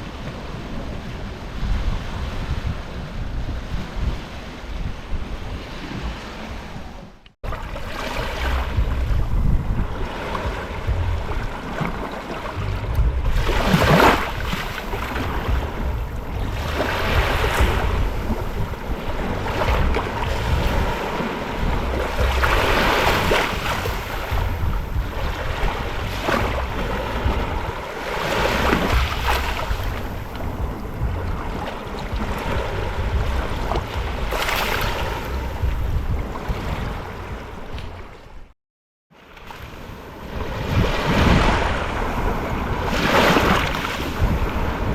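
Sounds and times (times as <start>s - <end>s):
small waves breaking on beach: 0.0s - 8.8s, 9.8s - 12.6s, 16.5s - 24.4s, 25.0s - 35.4s, 39.1s - 44.9s
wind buffeting microphone: 0.0s - 38.5s, 39.5s - 44.9s.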